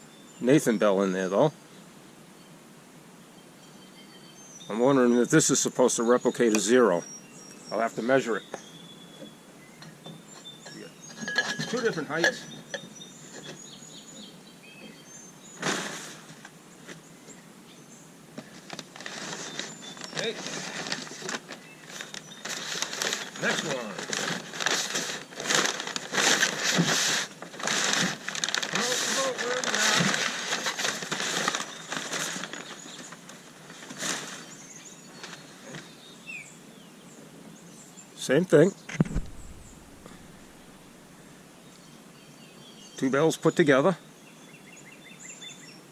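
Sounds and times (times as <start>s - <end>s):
handling rustle: 18.4s - 36.0s, 39.0s - 40.8s.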